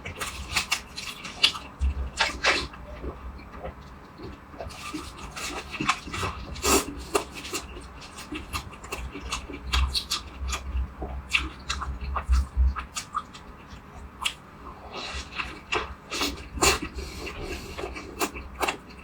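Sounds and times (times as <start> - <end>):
chewing and crunching food: 0.0 - 19.0.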